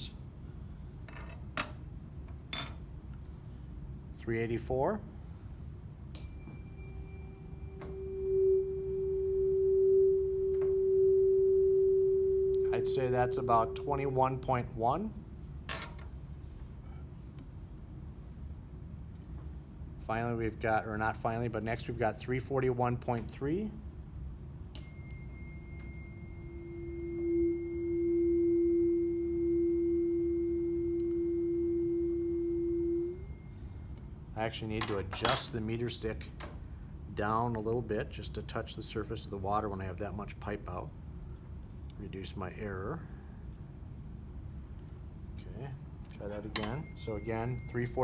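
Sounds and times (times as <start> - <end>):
tuning fork ringing: 6.2 - 14.9, 24.8 - 34.0, 46.2 - 48.0
resonating air tube: 6.3 - 14.9, 25.6 - 33.6.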